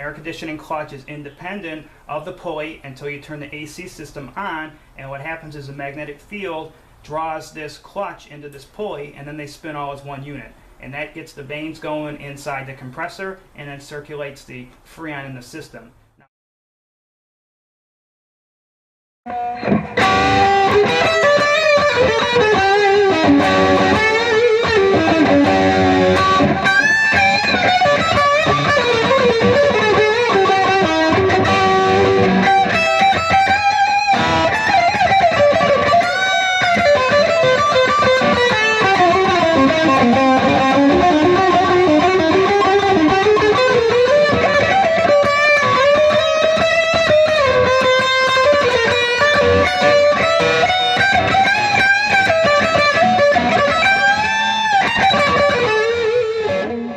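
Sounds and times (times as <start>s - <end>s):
electric guitar lead: 19.3s - 56.9s.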